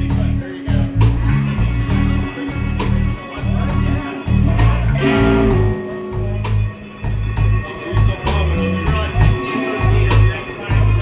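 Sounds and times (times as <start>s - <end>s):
bass line: 0.0s - 11.0s
drums keeping a steady beat: 0.0s - 11.0s
guitar: 0.0s - 11.0s.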